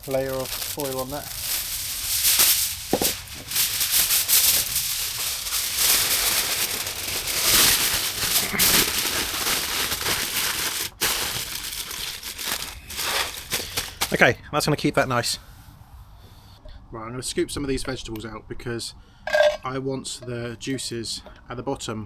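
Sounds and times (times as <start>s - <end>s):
aluminium foil crinkling: 0.0s - 14.3s.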